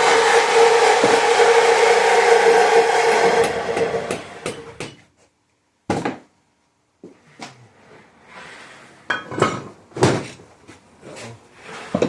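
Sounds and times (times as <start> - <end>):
power tool spinning down: 0.0 - 4.4.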